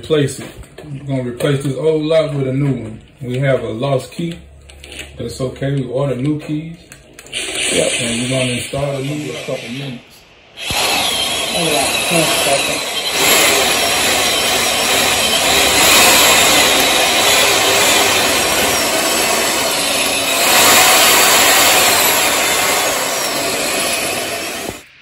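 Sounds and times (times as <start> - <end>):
power drill grinding metal: 7.3 - 10.0, 10.6 - 24.9.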